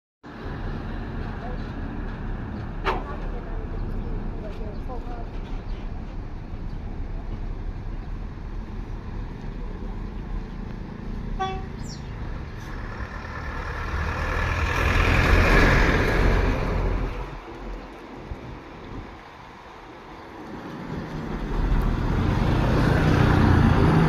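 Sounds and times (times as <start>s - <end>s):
bus engine and road noise: 0.2s - 24.0s
multi-tone bus horn: 11.3s - 12.0s.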